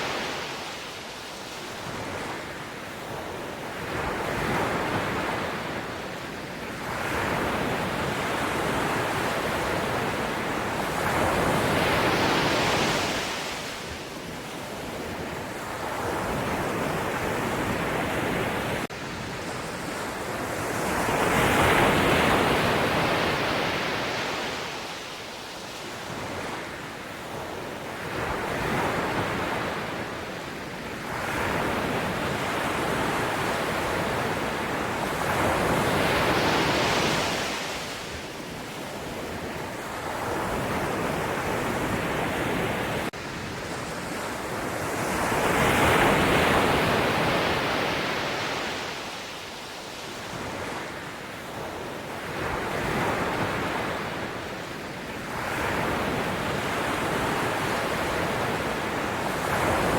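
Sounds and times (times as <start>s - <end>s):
sea waves breaking ashore: 31.0s - 59.9s.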